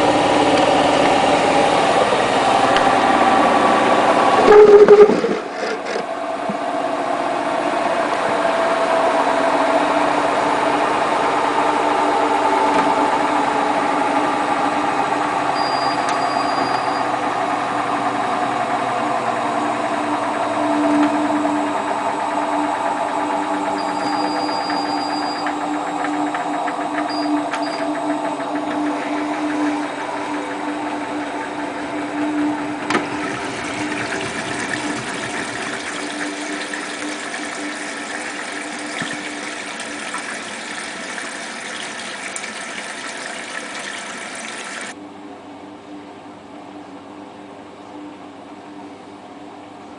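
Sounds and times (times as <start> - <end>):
washing machine spinning hum: 0.0 - 49.9.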